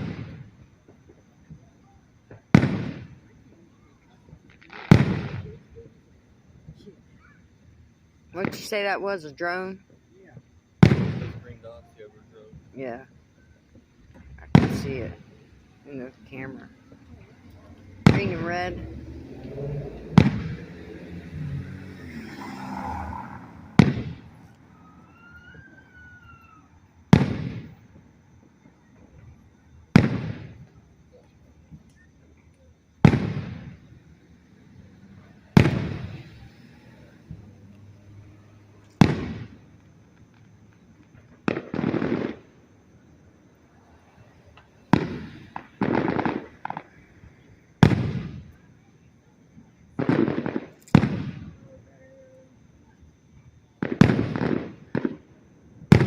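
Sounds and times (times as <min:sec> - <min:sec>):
fireworks booming: 0:00.0 - 0:56.0
aerial firework bangs: 0:02.5 - 0:03.2, 0:04.8 - 0:05.6, 0:10.8 - 0:11.4, 0:20.0 - 0:20.8, 0:23.7 - 0:24.4, 0:27.1 - 0:27.8, 0:33.0 - 0:33.8, 0:35.6 - 0:36.3, 0:39.0 - 0:39.6, 0:47.8 - 0:48.5, 0:50.0 - 0:51.5, 0:53.8 - 0:55.2
faint high whistle: 0:24.4 - 0:26.8.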